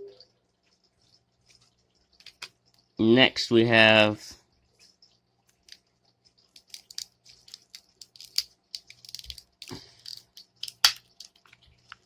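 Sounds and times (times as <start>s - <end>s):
packaging crinkling: 6.5s - 12.0s.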